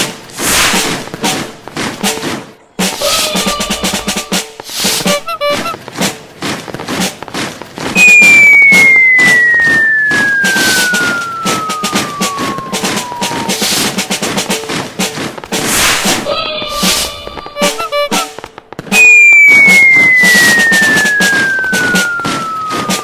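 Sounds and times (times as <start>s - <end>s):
firecracker pops crackling: 0.0s - 23.0s
whistle sliding down in pitch: 8.0s - 14.0s, 18.9s - 23.0s.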